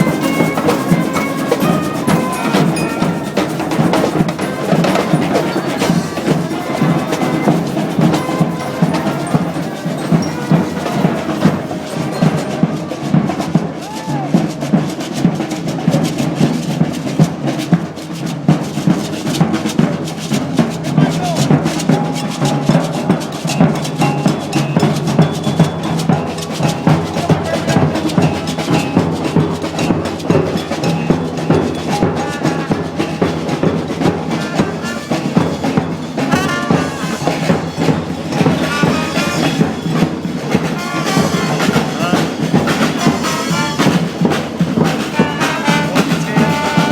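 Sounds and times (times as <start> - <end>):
snare and bass drums: 0.0 - 46.9
street band playing: 0.0 - 46.9.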